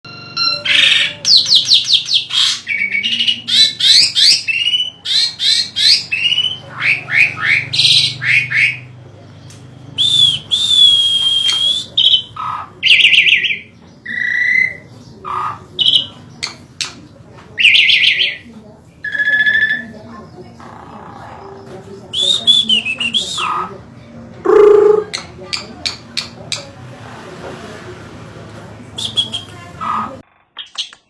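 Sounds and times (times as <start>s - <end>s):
starling singing whistles and trills: 0.4s - 17.0s, 17.6s - 20.5s, 21.2s - 23.8s, 29.0s - 31.0s.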